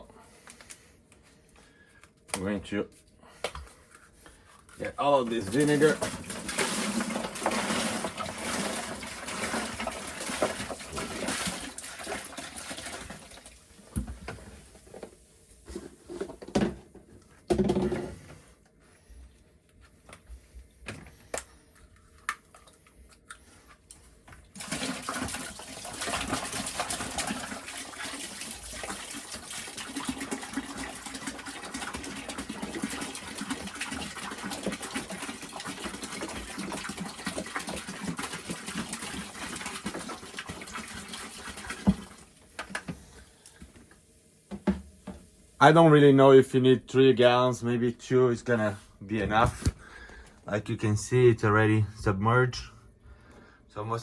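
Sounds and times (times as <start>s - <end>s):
liquid pouring into bucket: 4.8s - 14.5s, 24.4s - 42.9s.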